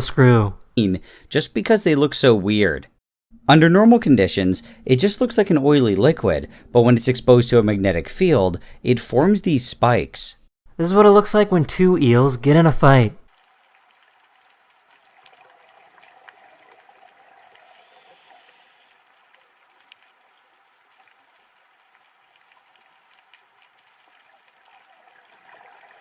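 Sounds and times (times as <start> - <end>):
faint running water trickle: 13.2 - 26.0
small ticks: 17.5 - 25.0.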